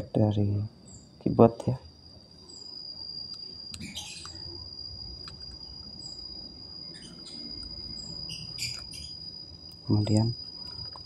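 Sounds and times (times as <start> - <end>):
steady high-pitched tone: 2.4 - 11.0.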